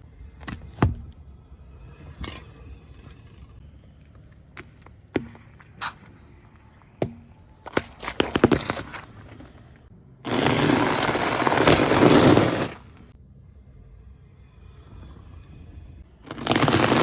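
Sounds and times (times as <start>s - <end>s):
brittle objects crushed under tyre: 7.0s - 13.1s, 16.2s - 17.0s.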